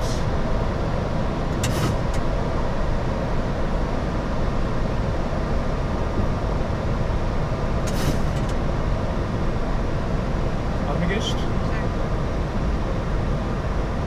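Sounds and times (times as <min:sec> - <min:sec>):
aircraft engines and airflow: 0:00.0 - 0:14.0
brief hiss: 0:01.6 - 0:02.0, 0:07.9 - 0:08.4.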